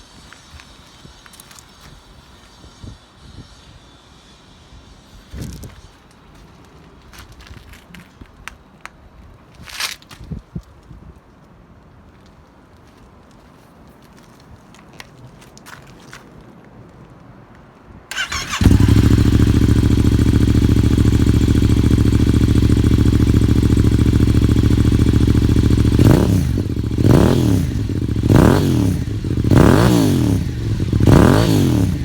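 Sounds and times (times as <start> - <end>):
motorcycle engine cranking: 18.1 - 22.6
motorcycle engine idling: 18.1 - 32.0
motorcycle engine revving: 18.1 - 32.0.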